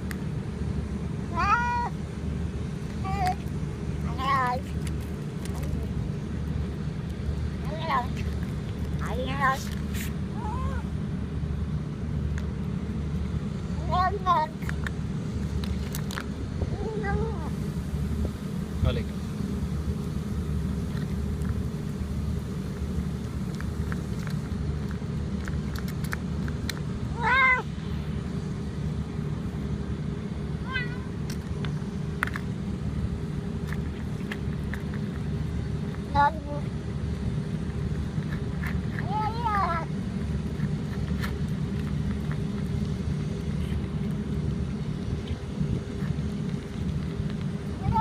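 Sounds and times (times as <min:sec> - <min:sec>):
motor idling rumble: 0:00.0 - 0:48.0
steady low hum: 0:00.0 - 0:48.0
cat mewing: 0:01.3 - 0:02.0, 0:10.3 - 0:10.9, 0:27.2 - 0:27.7, 0:30.6 - 0:31.2.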